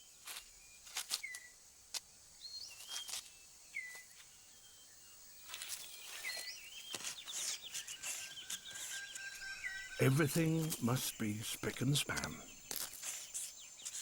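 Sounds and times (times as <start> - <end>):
whistled bird notes: 5.8 - 14.0.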